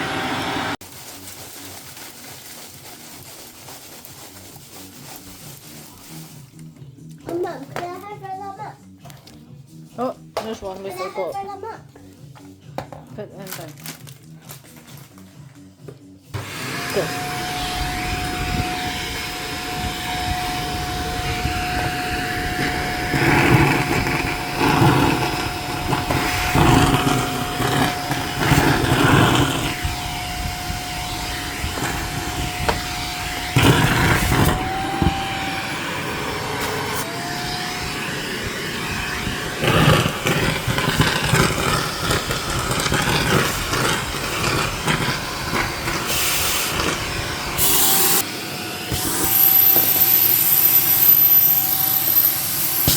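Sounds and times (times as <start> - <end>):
vacuum cleaner motor whine: 0.0 - 0.8, 16.4 - 52.9
packing peanuts rattling up nozzle: 0.8 - 6.6, 13.4 - 15.3, 22.6 - 29.8, 39.6 - 47.8.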